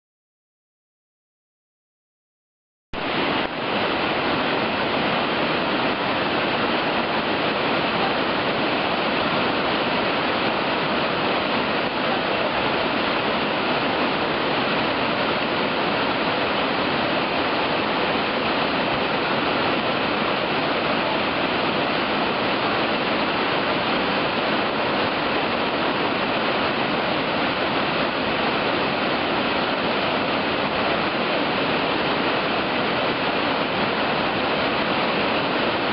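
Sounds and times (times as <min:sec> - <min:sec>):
river rapids roaring: 0:03.0 - 0:35.9.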